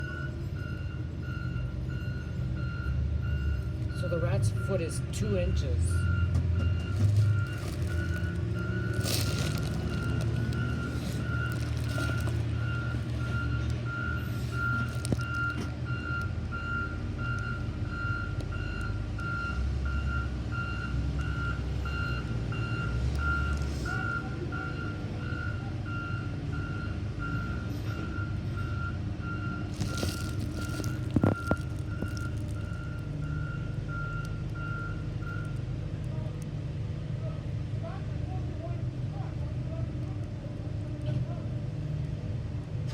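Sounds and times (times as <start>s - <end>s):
low engine rumble: 0.0s - 27.2s, 28.8s - 42.9s
reversing alarm beeping: 5.8s - 35.6s.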